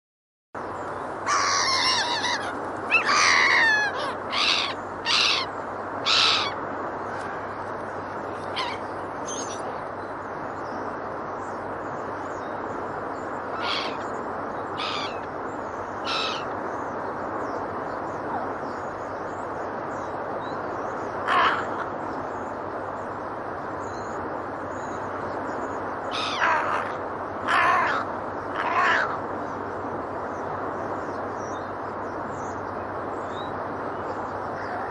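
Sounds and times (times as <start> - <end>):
steady background hiss: 0.6 - 34.9
seagulls and geese calling: 1.3 - 7.6, 8.4 - 9.6, 13.5 - 14.1, 14.8 - 15.3, 16.0 - 16.5, 21.2 - 22.0, 26.1 - 29.2.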